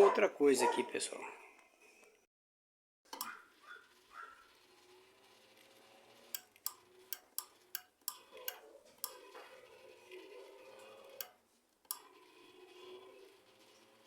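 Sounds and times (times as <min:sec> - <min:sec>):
buzzer clicking: 0:06.1 - 0:09.2, 0:11.1 - 0:12.0.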